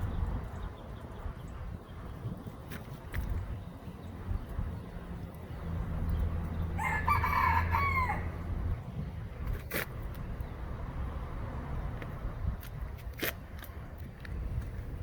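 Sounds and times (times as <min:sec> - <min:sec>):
rooster crowing: 0:06.8 - 0:08.4.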